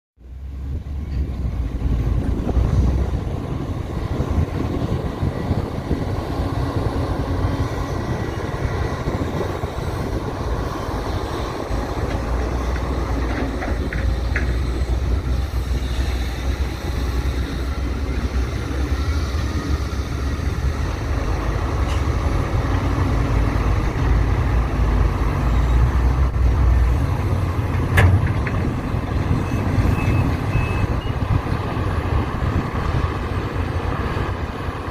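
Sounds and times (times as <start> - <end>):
diesel engines rumbling under load: 0.2 - 34.9.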